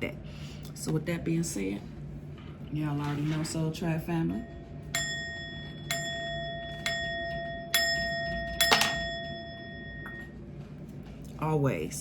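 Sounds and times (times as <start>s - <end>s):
small metal bell ringing: 4.4s - 10.3s.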